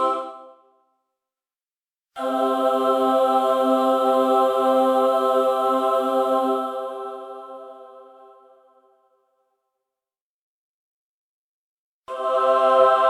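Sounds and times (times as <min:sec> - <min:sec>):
choir sustained chord: 0:00.0 - 0:00.8, 0:02.2 - 0:09.2, 0:12.1 - 0:13.0.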